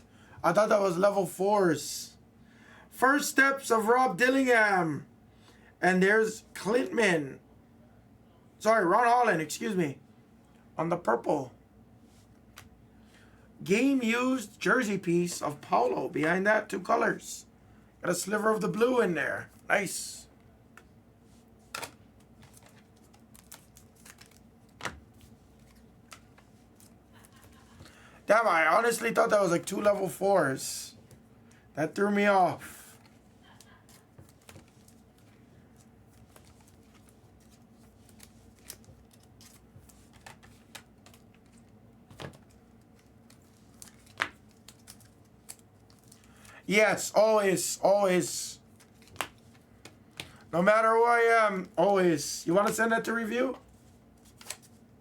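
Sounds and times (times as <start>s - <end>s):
cards clicking and tapping: 38.1s - 46.1s, 48.8s - 50.4s.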